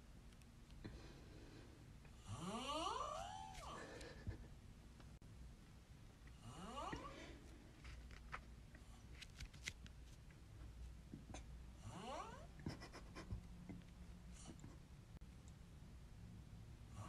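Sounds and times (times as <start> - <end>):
faint snoring: 2.1 - 3.8, 6.4 - 7.3, 11.8 - 12.5.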